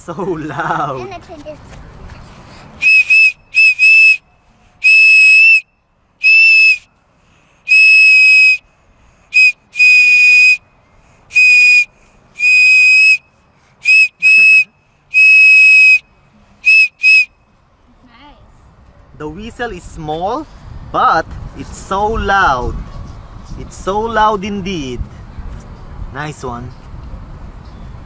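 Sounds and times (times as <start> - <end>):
high-pitched toy whistle toots: 2.8 - 4.2, 4.8 - 6.9, 7.7 - 8.6, 9.3 - 10.6, 11.3 - 13.2, 13.8 - 16.0, 16.6 - 17.3.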